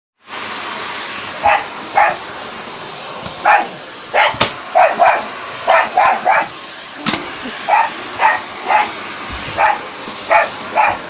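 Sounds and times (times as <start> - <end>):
vacuum cleaner running: 0.2 - 11.0
dog barking: 1.4 - 2.2, 3.4 - 6.5, 7.7 - 9.0, 9.6 - 11.0.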